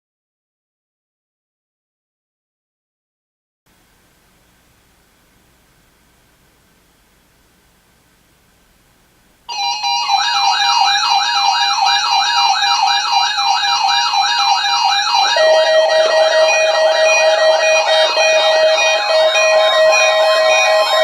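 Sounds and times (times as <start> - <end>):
electronic alert tone sweeping: 9.5 - 21.0
steady lower tone: 11.7 - 21.0.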